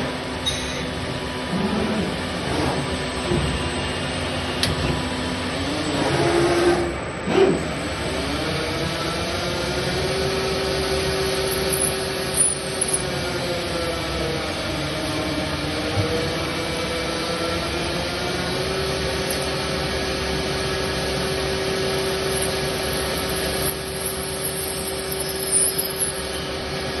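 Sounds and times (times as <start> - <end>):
cnc machine motor whine: 1.0 - 11.4, 13.1 - 23.2.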